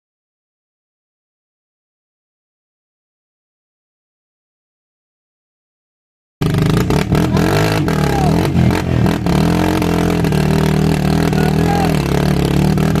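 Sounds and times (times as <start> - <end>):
atv engine revving: 6.4 - 13.0.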